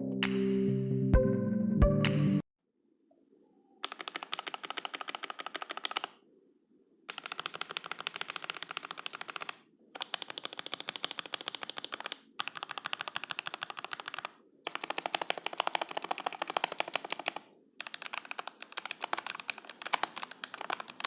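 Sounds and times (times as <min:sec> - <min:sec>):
fast typing on mechanical keyboard: 0:03.8 - 0:06.2, 0:07.1 - 0:21.0.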